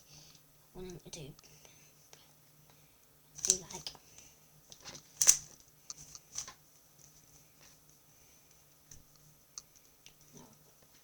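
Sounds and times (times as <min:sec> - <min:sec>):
puzzle cube clicking: 0:03.4 - 0:03.7.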